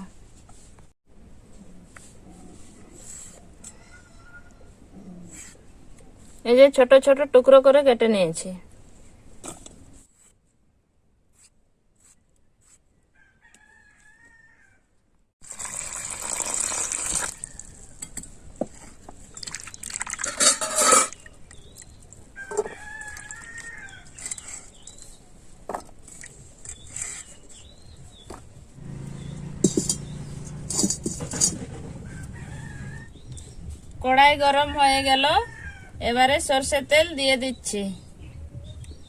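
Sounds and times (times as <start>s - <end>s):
rooster crowing: 3.6s - 4.7s, 13.2s - 14.9s, 22.4s - 24.2s, 31.9s - 33.1s, 35.3s - 36.0s.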